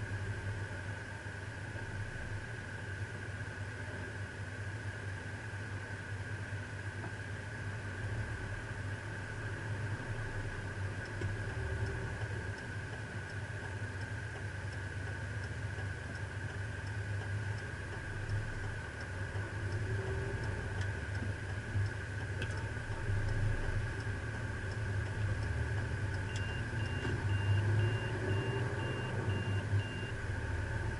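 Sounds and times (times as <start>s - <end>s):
engine idling: 0.0s - 30.9s
faint regular ticking: 10.9s - 30.1s
high warning beeps: 26.2s - 30.2s.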